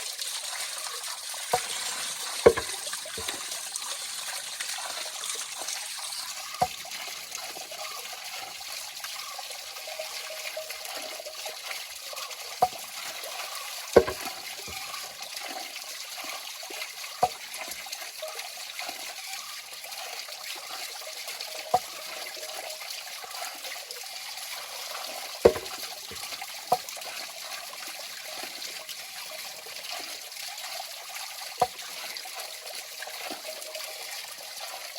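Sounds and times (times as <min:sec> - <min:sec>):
river water over rocks: 0:01.5 - 0:03.5, 0:13.9 - 0:14.8, 0:25.4 - 0:26.9.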